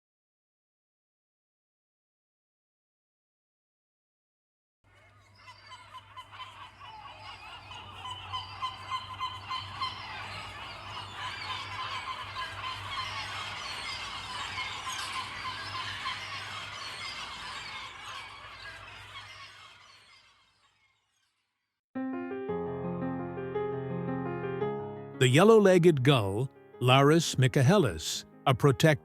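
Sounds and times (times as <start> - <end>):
colony of gulls calling: 4.9 - 20.9.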